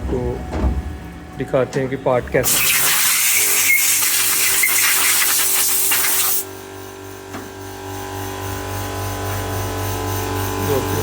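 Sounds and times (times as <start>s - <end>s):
loud spraying hiss: 2.4s - 6.5s.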